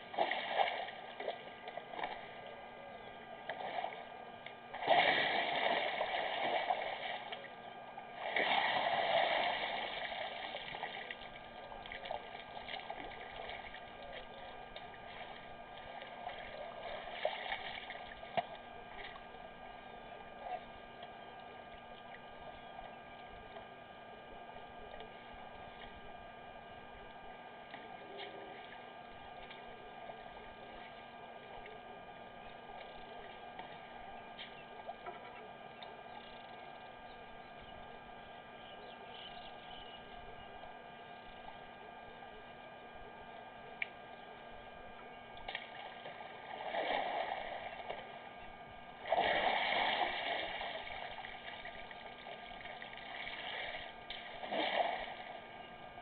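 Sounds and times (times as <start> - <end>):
electrical hum: 0.0 - 56.0
elephant drinking water splashing: 4.7 - 7.3, 8.2 - 13.9, 45.8 - 47.9, 49.0 - 55.4.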